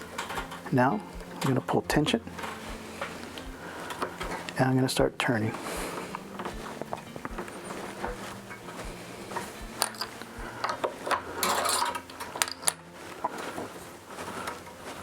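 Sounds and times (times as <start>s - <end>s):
guitar tuning peg clicking: 0.0s - 8.8s.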